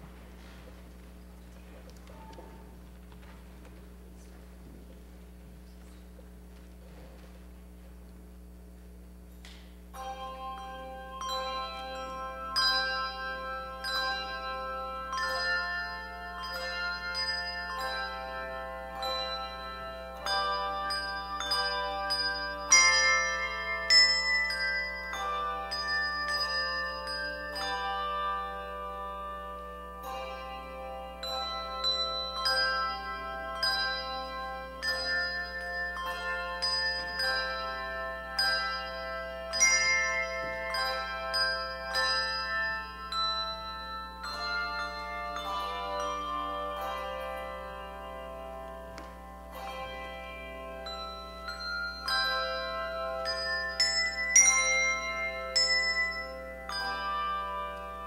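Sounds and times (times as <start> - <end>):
handbell choir playing: 9.9 - 58.0.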